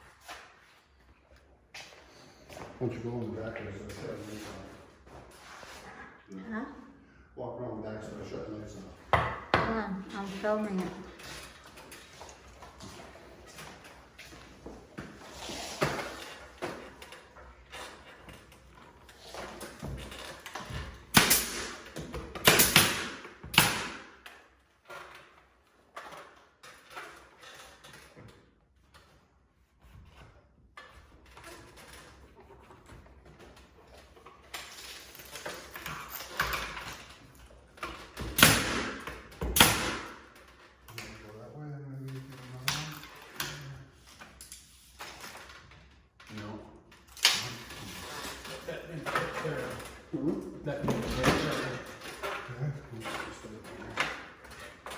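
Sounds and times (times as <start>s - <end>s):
rustling and handling noise: 8.7s - 22.4s
sharp knocks and thumps: 9.0s - 9.9s.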